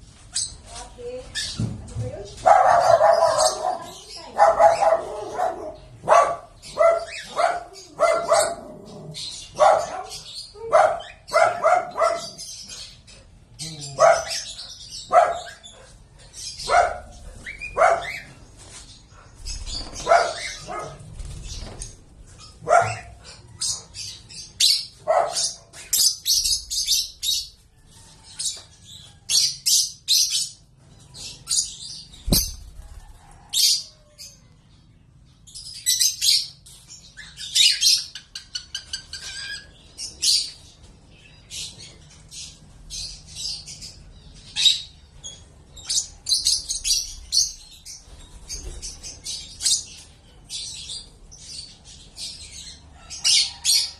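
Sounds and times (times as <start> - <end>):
lovebirds chirping and screeching: 0.0 - 53.9
dog barking: 2.4 - 8.8, 9.6 - 12.4, 13.9 - 16.0, 16.6 - 18.3, 20.0 - 21.0, 22.6 - 23.4, 25.0 - 25.6.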